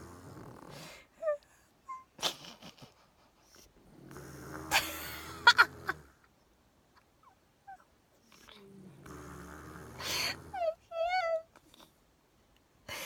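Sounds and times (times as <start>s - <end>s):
snoring breath: 0.0s - 1.1s, 8.6s - 10.6s.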